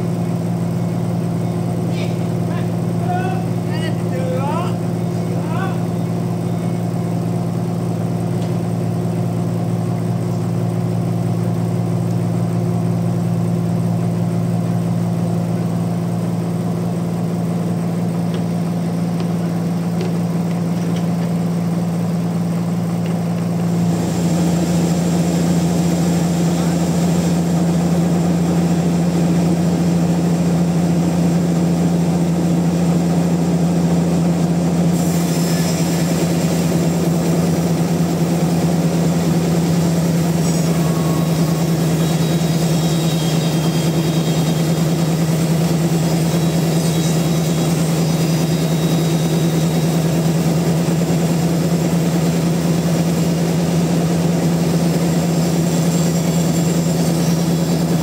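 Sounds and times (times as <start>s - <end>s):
sawmill machinery humming: 0.0s - 58.0s
high hiss: 38.4s - 50.5s.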